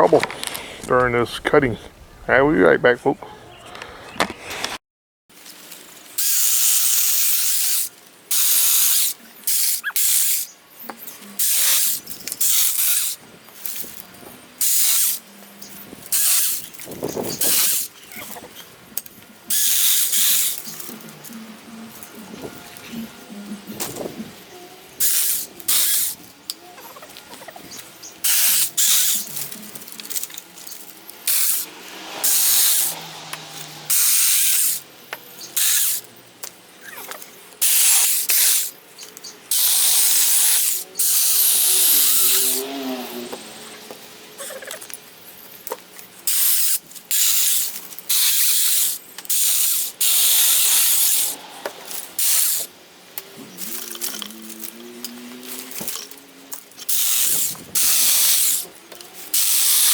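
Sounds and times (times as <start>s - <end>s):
mini chainsaw cutting wood: 15.9s - 18.5s, 24.9s - 26.3s, 27.1s - 35.0s, 35.6s - 36.1s, 39.5s - 45.1s, 46.2s - 59.9s.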